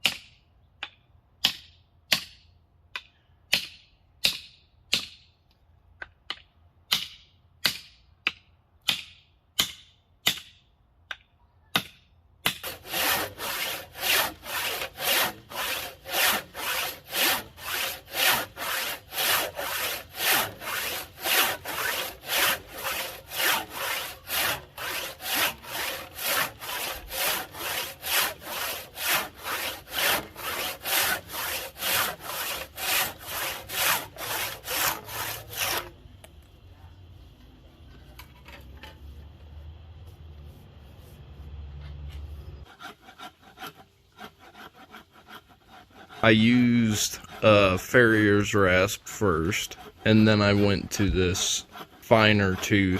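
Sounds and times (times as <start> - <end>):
rasp scraping wood: 12.4 - 36.0, 42.2 - 52.9.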